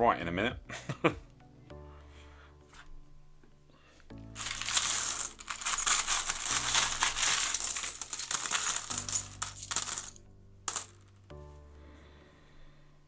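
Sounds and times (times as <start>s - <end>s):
coins clattering: 4.4s - 11.2s
coins clinking and rattling: 4.4s - 11.2s.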